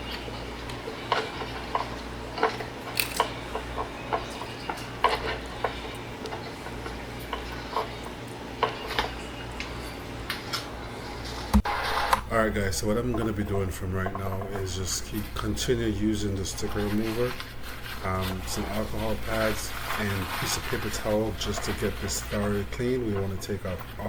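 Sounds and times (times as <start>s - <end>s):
cloth wiping a touchscreen: 16.6s - 22.8s.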